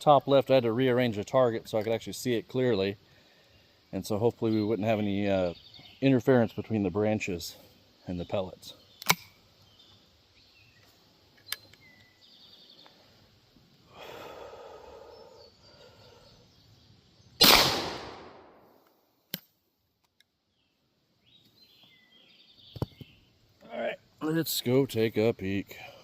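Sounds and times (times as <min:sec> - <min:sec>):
shotgun blast: 0:17.4 - 0:18.6.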